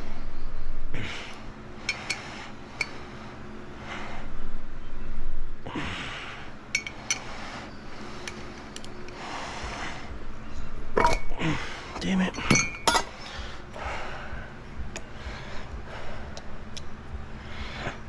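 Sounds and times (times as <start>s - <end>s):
loud breathing: 0.0s - 4.8s, 5.6s - 12.0s, 13.1s - 18.0s.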